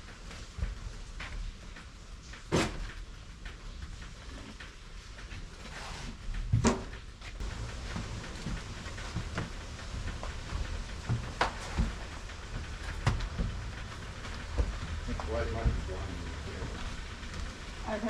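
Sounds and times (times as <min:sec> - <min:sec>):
knocks and thumps of junk moved: 0:06.5 - 0:17.8.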